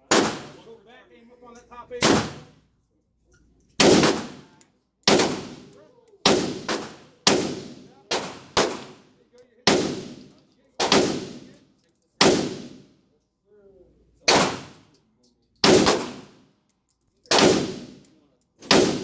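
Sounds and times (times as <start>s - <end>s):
rifle shots with echo: 0.1s - 0.7s, 2.0s - 2.5s, 3.8s - 9.0s, 9.7s - 11.6s, 12.2s - 12.9s, 14.3s - 14.8s, 15.6s - 16.3s, 17.3s - 19.0s.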